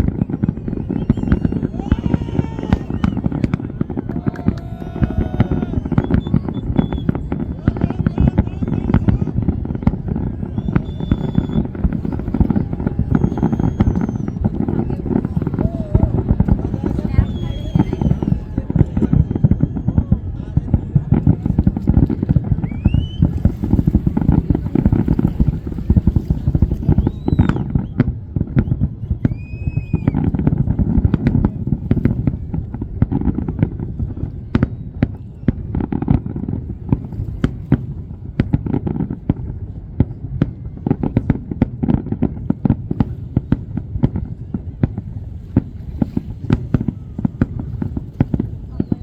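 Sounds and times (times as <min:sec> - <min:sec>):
firework whistles: 0:00.0 - 0:20.4, 0:21.1 - 0:32.5, 0:42.4 - 0:49.0
heavy low rumble: 0:00.0 - 0:29.8
fireworks crackling and banging: 0:00.0 - 0:49.0.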